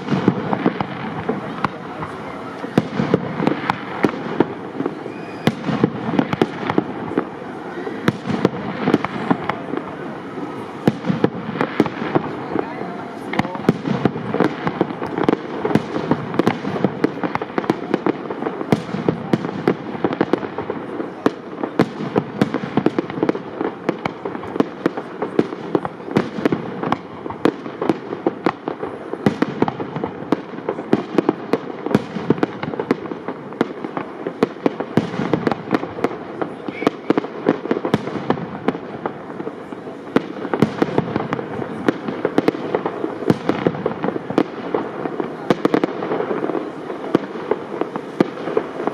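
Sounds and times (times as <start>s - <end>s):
fireworks bursting: 0.0s - 48.9s.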